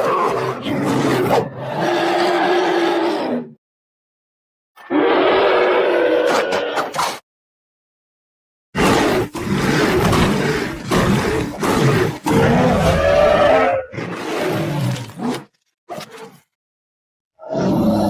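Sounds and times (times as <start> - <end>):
monster roars and growls: 8.8 - 15.5, 17.4 - 18.0.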